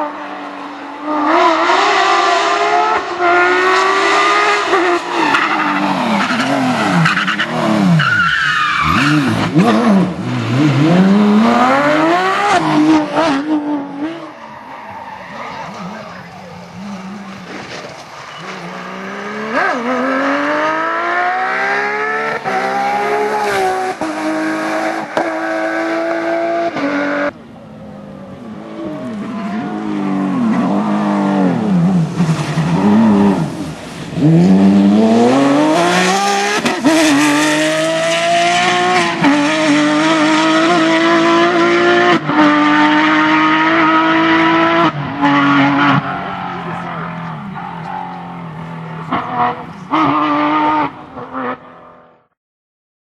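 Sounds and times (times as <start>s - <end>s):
rally car engine revving hard: 8.8s - 14.2s, 18.5s - 27.4s, 29.1s - 48.2s, 49.0s - 52.0s.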